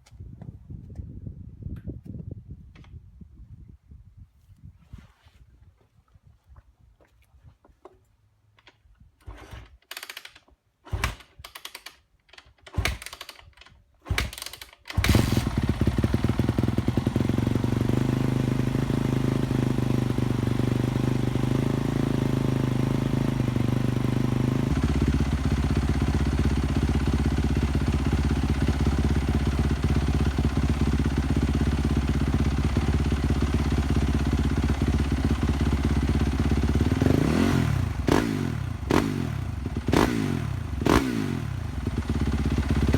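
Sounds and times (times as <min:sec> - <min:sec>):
motorcycle engine idling: 0:15.1 - 0:42.9.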